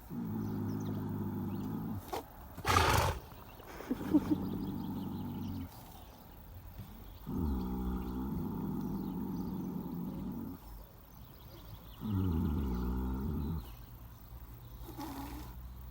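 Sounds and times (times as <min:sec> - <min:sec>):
pony snoring: 0:00.0 - 0:06.0, 0:07.2 - 0:10.7, 0:12.0 - 0:13.8, 0:14.8 - 0:15.9.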